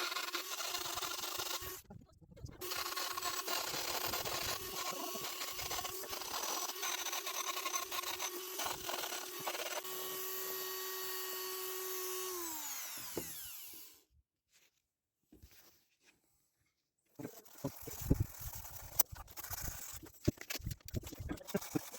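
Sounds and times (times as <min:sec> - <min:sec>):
power tool grinding metal: 0:00.0 - 0:01.9, 0:02.6 - 0:14.0
power tool whine winding down: 0:02.6 - 0:14.0.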